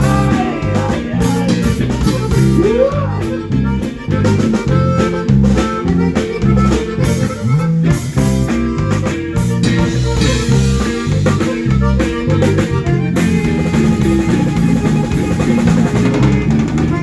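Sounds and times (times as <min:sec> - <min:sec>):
drum kit: 0:00.0 - 0:17.0
guitar: 0:00.0 - 0:17.0
walking bass line: 0:00.0 - 0:17.0.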